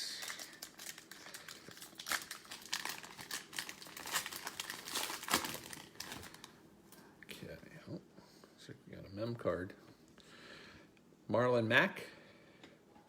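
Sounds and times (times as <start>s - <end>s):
foil packs crinkling and tearing: 0.0s - 6.6s.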